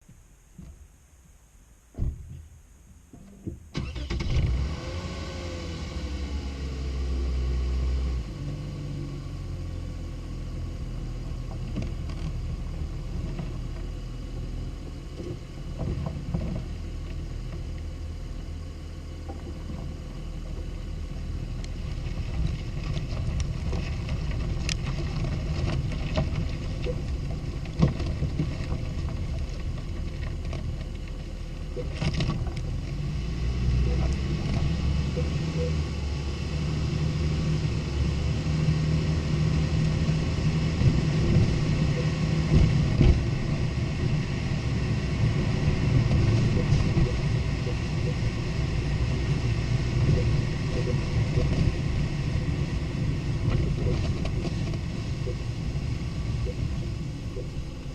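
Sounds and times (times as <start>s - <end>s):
car engine starting and idling: 3.1s - 57.9s.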